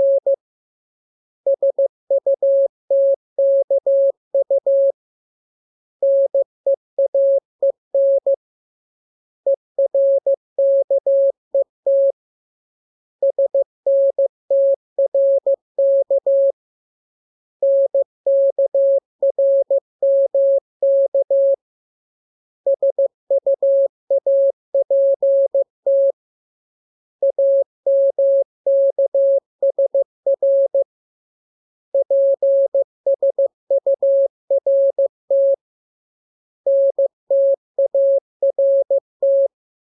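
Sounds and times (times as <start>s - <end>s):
morse code beeps: 36.7s - 39.5s.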